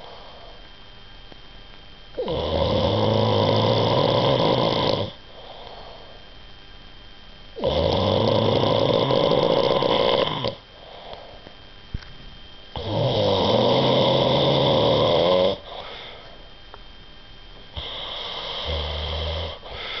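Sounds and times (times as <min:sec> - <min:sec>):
person snoring: 0:02.2 - 0:06.2, 0:07.6 - 0:11.4, 0:12.7 - 0:16.4, 0:17.7 - 0:20.0.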